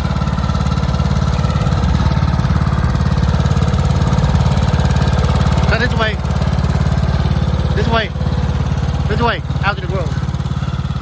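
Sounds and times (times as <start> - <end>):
lawnmower engine running: 0.0 - 11.0.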